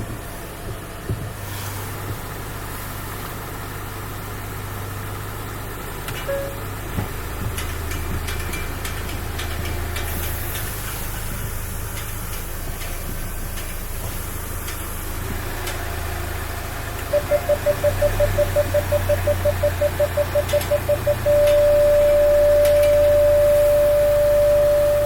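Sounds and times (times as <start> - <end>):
brakes humming: 0.0 - 25.0
electronic warning beep: 6.3 - 6.7, 17.1 - 25.0.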